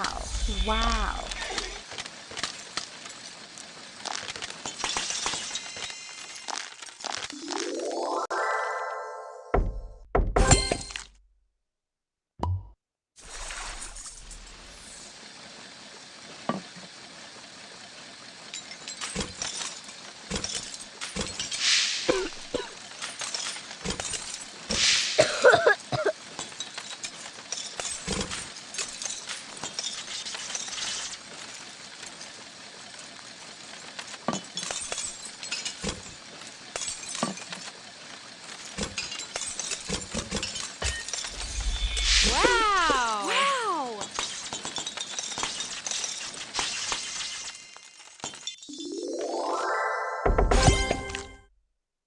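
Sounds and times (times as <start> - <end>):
steady hiss: 21.5 - 22.8, 24.6 - 26.3.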